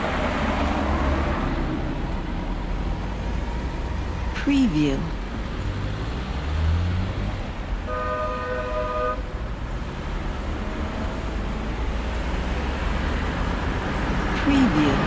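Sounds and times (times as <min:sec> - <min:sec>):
street traffic rumble: 0:00.0 - 0:15.0
vehicle passing: 0:00.0 - 0:15.0
vehicle horn honk: 0:07.9 - 0:09.4.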